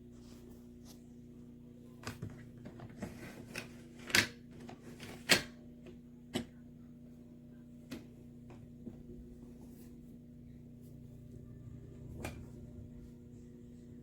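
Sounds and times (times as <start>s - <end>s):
low room hum: 0.0s - 14.0s.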